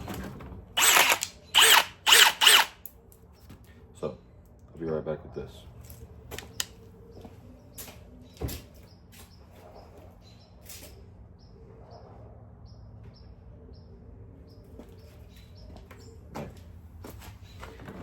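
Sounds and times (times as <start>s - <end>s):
shop background hum: 0.0s - 4.7s.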